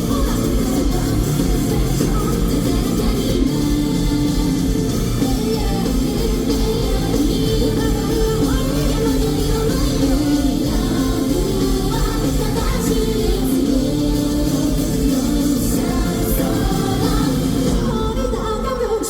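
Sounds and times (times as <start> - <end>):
live rock band playing: 0.0 - 18.4
woman singing: 0.0 - 19.0.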